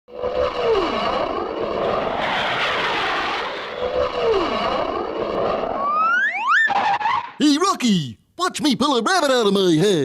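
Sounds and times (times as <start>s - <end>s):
cartoon airplane engine droning: 0.1s - 7.4s
falling whistle: 2.2s - 7.4s.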